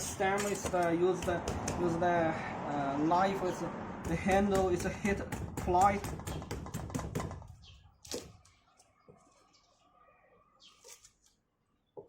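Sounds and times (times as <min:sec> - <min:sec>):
knife chopping on cutting board: 0:01.2 - 0:01.8.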